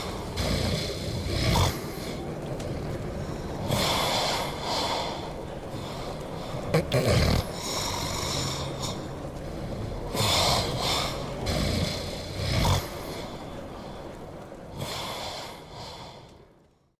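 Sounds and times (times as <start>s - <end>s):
person snoring: 0.0s - 2.2s, 6.7s - 9.0s, 10.1s - 13.0s.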